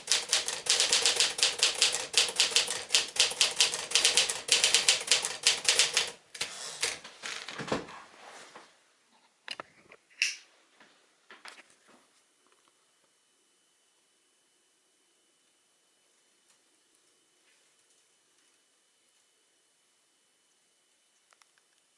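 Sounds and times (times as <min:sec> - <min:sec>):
typewriter typing: 0:00.0 - 0:07.0.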